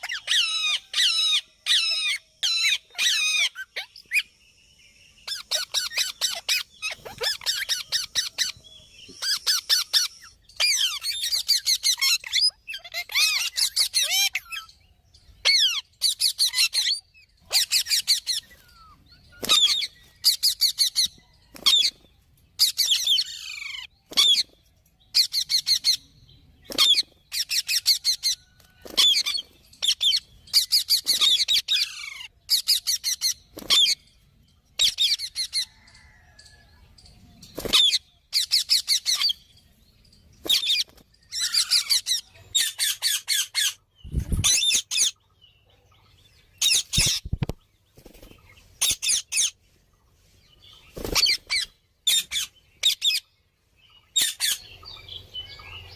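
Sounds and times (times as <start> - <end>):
parakeet screeching: 0.0 - 4.2, 5.3 - 8.5, 9.2 - 14.6.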